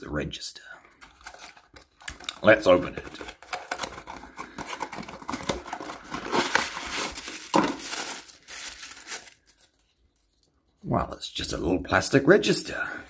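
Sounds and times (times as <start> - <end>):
packaging crinkling and tearing: 1.0 - 10.5.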